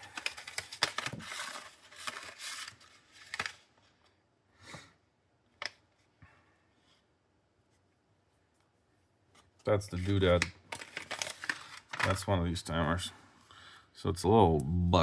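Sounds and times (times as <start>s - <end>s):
paper rustling and tearing: 0.0s - 3.6s, 9.9s - 12.2s.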